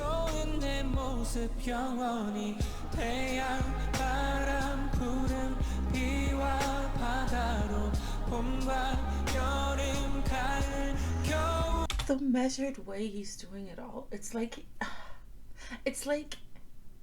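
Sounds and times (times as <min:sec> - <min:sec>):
bass line and steady beat: 0:00.0 - 0:01.9, 0:02.6 - 0:11.9
man singing with vibrato: 0:00.0 - 0:11.9.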